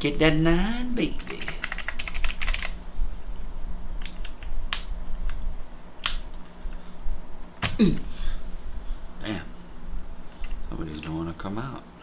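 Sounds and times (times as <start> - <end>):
mechanical keyboard key presses: 1.2 - 2.7.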